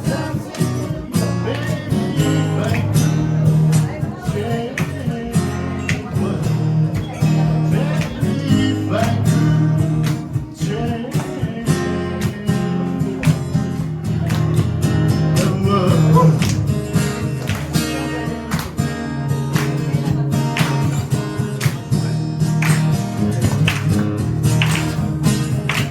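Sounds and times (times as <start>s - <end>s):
person singing: 0.0s - 14.2s, 15.1s - 16.6s
acoustic guitar strumming: 0.0s - 25.9s.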